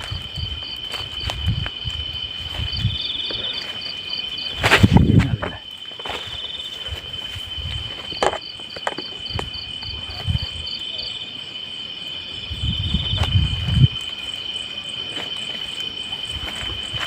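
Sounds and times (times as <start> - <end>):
insect chirping in pulses: 0.0 - 17.0
insects chirring: 0.0 - 17.0.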